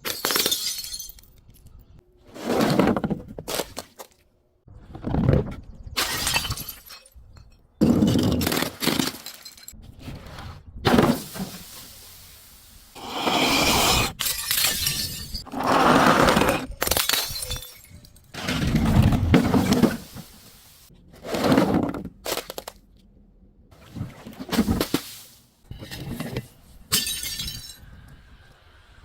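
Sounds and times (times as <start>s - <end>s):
glass bottles breaking: 0.0s - 1.4s, 6.0s - 9.8s, 14.1s - 15.5s, 16.8s - 18.7s, 26.9s - 27.9s.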